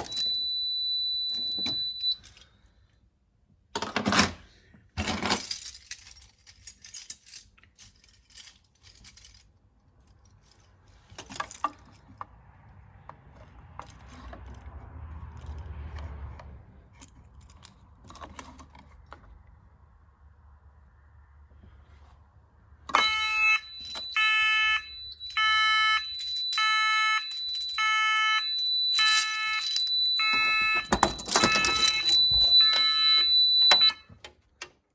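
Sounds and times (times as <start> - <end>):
metallic jangling: 5.1 - 12.1.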